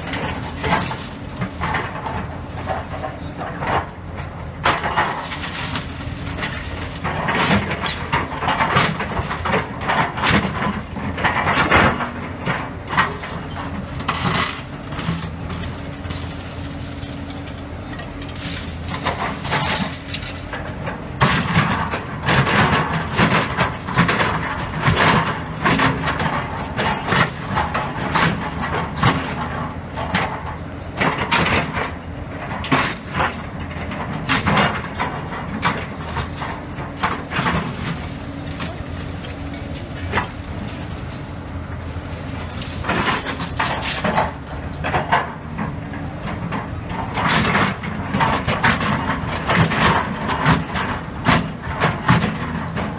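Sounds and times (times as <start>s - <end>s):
concrete rubble crashing: 0.0s - 52.9s
excavator running: 0.0s - 52.9s.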